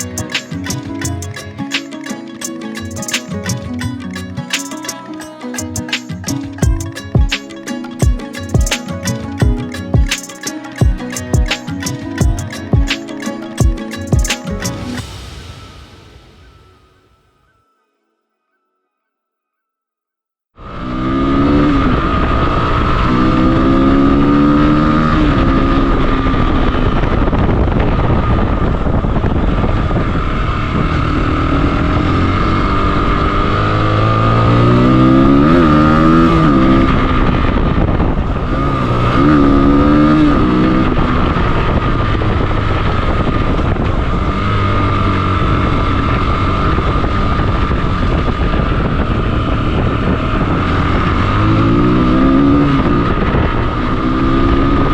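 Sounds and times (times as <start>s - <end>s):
low rush of noise: 0.0s - 17.5s
motorcycle engine revving: 20.7s - 27.5s, 29.4s - 54.9s.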